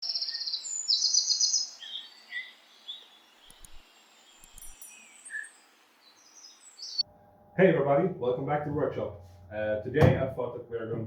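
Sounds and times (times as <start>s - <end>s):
birds trilling and chirping: 0.0s - 7.0s
light hiss: 1.5s - 7.0s.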